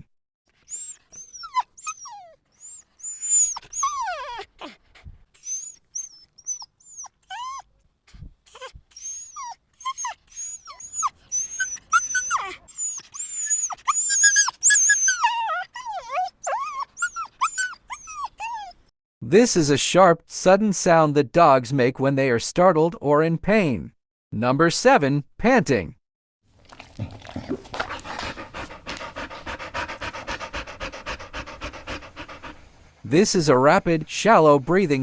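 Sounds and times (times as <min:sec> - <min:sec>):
dog yelping: 0:00.7 - 0:04.8, 0:05.4 - 0:07.7, 0:08.5 - 0:18.8.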